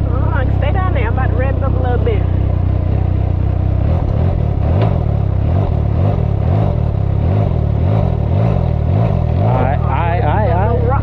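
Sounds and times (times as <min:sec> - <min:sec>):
engine revving in quick blips: 0:03.8 - 0:10.2.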